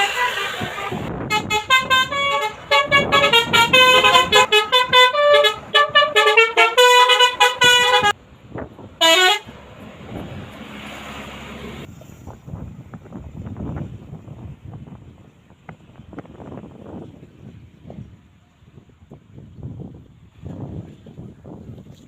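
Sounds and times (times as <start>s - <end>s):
horn note with bending pitch: 0.0s - 8.2s
multi-tone horn melody: 0.0s - 8.2s, 9.0s - 9.5s.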